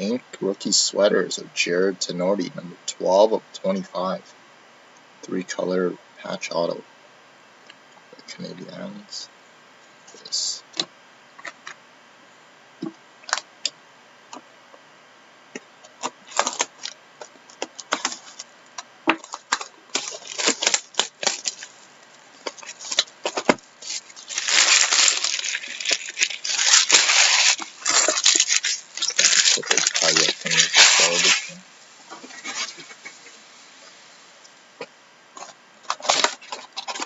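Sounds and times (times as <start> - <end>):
wrapper tearing and crinkling: 16.2 - 17.0, 17.8 - 18.5, 19.2 - 31.6, 35.4 - 37.0.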